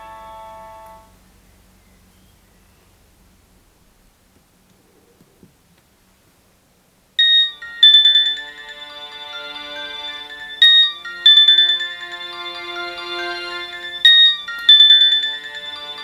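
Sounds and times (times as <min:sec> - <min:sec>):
polyphonic phone ringtone: 0:07.2 - 0:16.0.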